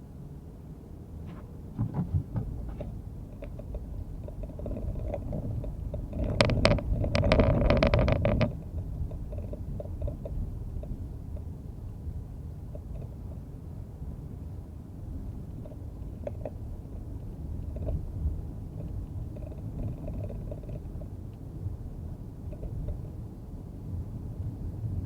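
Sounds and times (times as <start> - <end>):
road rumble inside car: 0.0 - 25.0.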